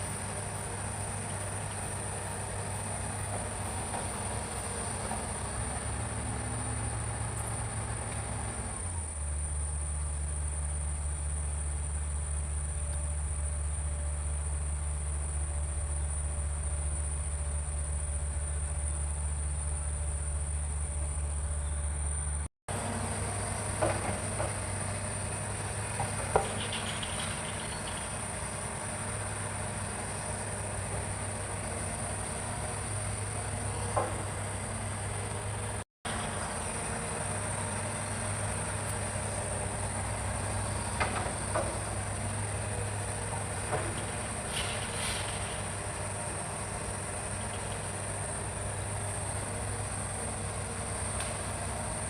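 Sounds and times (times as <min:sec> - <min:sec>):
excavator diesel engine running: 0:00.0 - 0:52.0
knocks and clanks: 0:26.0 - 0:28.1.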